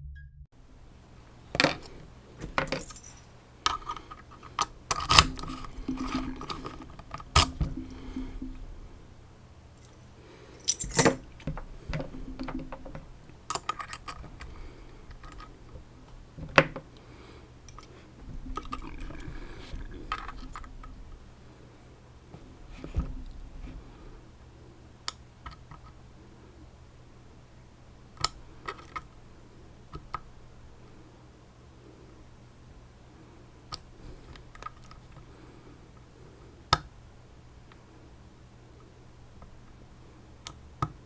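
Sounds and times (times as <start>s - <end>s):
metal pieces clinking and jangling: 2.5s - 3.3s, 10.6s - 11.2s.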